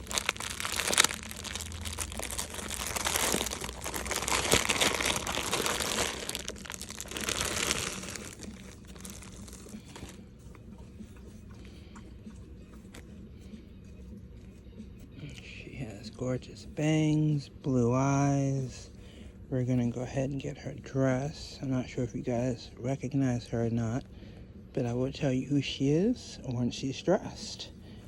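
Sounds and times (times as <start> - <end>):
packaging crinkling: 0.0 - 10.2.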